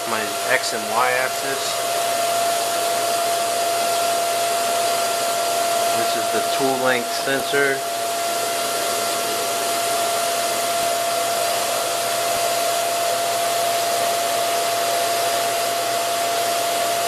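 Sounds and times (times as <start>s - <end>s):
high-pitched hum: 0.0s - 10.2s.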